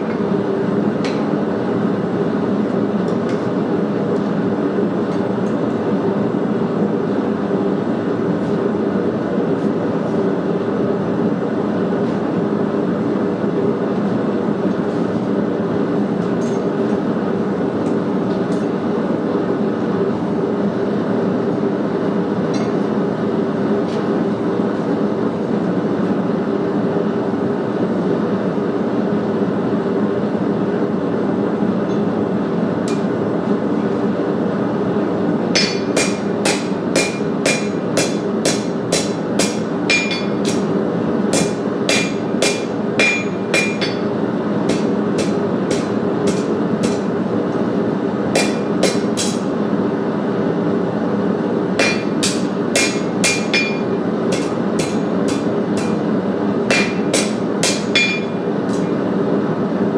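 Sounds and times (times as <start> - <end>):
hammer striking steel on anvil: 22.6 - 22.8, 35.6 - 47.2, 48.4 - 49.5, 51.8 - 59.0.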